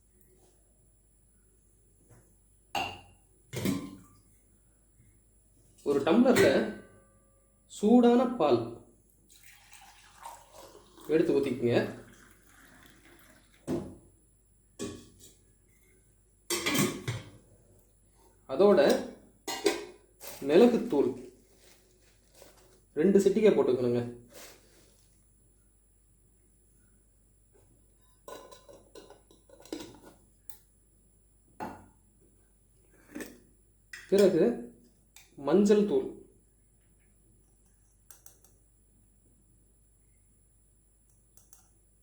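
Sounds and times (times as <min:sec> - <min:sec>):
kitchen utensils clinking: 0:16.5 - 0:17.3, 0:18.9 - 0:20.8, 0:28.2 - 0:30.1.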